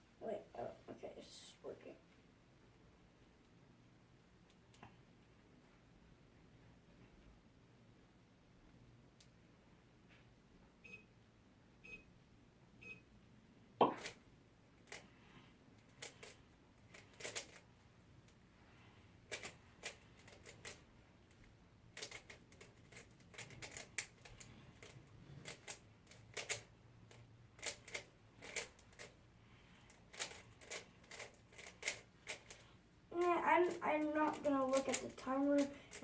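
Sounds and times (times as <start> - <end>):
puzzle cube layers clicking: 33.6 - 35.7.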